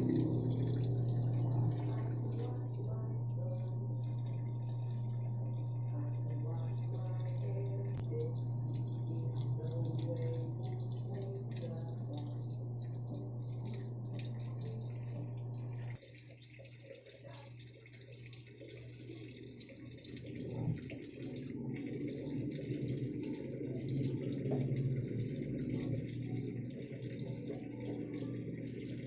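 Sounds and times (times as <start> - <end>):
washing machine hum: 0.0 - 29.0
water rushing into machine: 0.0 - 29.0.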